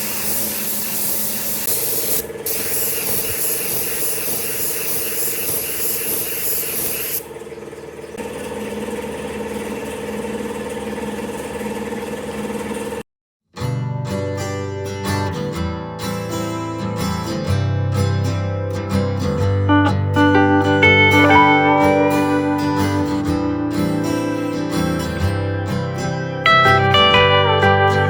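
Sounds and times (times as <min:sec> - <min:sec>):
spray gun hissing: 0:00.0 - 0:07.2.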